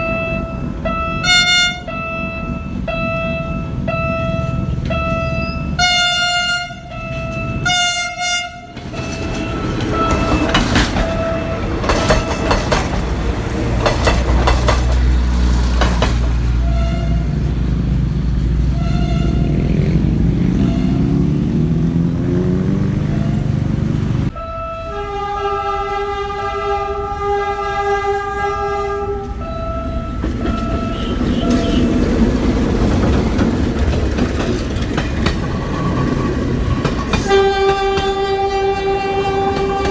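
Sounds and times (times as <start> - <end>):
long low train horn blast: 0.0 - 33.4, 37.1 - 39.9
train engine rumble: 0.0 - 39.9
short high train horn toots: 1.2 - 2.5, 5.4 - 9.2, 16.6 - 17.4, 18.7 - 19.7, 20.6 - 21.2, 24.4 - 32.1, 37.2 - 39.9
wheels clacking over rail joints: 6.9 - 24.4, 29.2 - 39.9.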